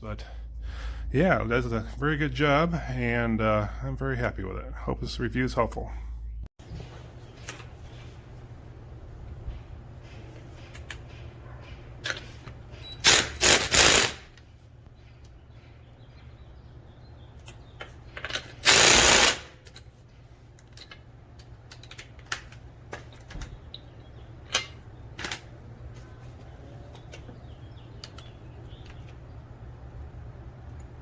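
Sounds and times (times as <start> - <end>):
impact wrench hammering: 13.1 - 14.3.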